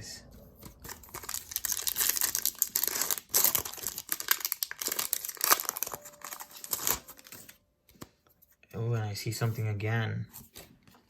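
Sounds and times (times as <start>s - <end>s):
foil wrapper crinkling and tearing: 0.8s - 7.6s.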